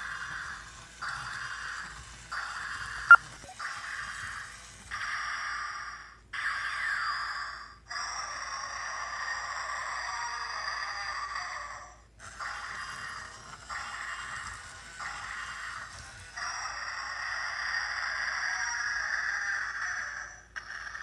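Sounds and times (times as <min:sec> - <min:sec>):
toy electronic growl bursts: 0:06.8 - 0:21.0.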